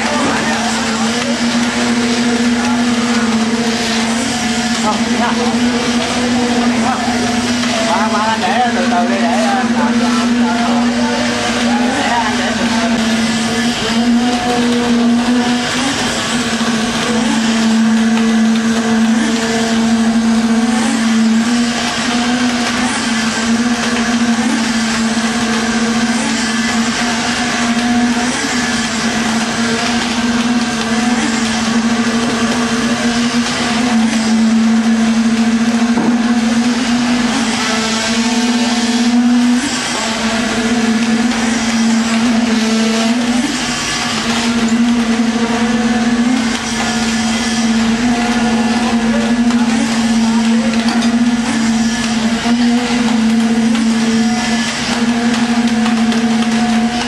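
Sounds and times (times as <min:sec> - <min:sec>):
machine motor humming: 0:00.0 - 0:57.0.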